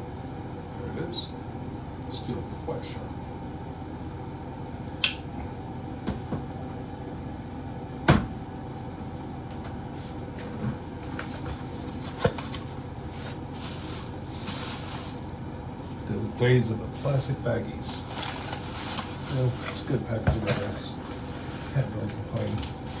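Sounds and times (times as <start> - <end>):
plastic bag rustling: 11.6 - 15.3, 18.0 - 19.9.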